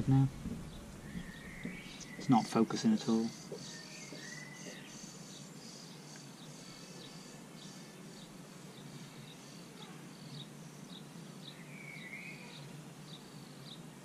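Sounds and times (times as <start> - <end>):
steady background hiss: 0.0 - 14.0
high bird chirps: 0.6 - 5.1
lower bird call: 0.6 - 8.3.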